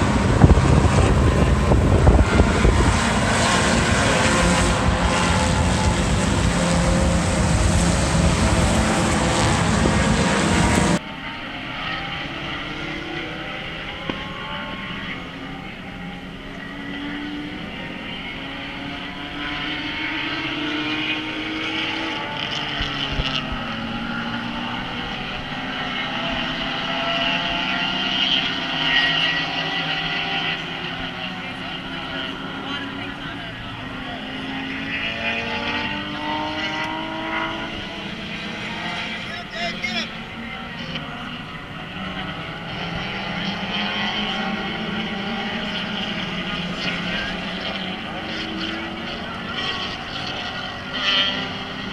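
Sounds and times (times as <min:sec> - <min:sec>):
loud even rush: 0:00.0 - 0:11.0
racing car engines accelerating: 0:00.0 - 0:51.9.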